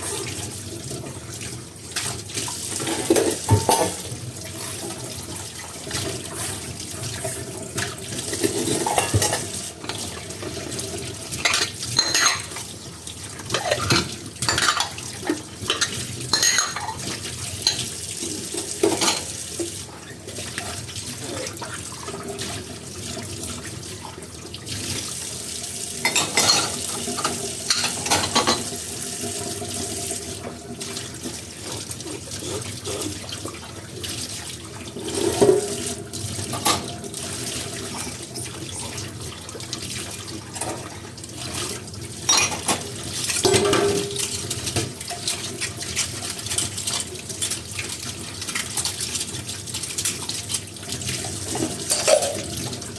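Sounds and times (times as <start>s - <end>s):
running tap water splashing: 0.0s - 52.9s
dishes and cutlery clinking: 2.8s - 4.1s, 8.3s - 10.0s, 11.4s - 12.6s, 13.5s - 17.9s, 18.8s - 19.3s, 26.0s - 28.7s, 42.2s - 50.7s, 51.6s - 52.6s.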